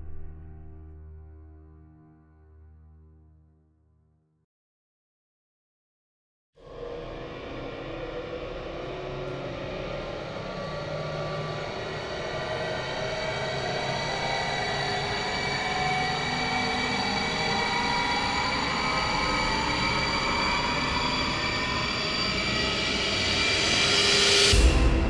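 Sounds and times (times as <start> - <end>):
rumbling cinematic drone: 6.7 - 13.8.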